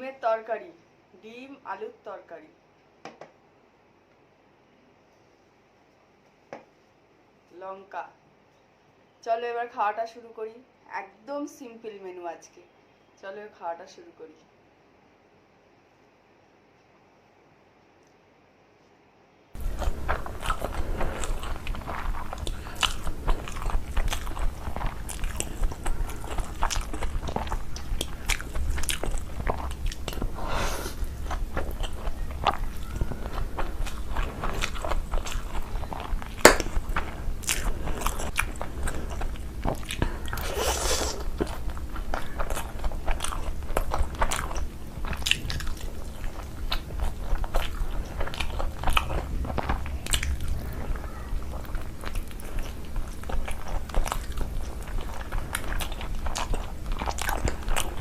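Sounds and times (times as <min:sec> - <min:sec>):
steady low hum: 0:14.4 - 0:58.0
chewing and crunching: 0:19.6 - 0:58.0.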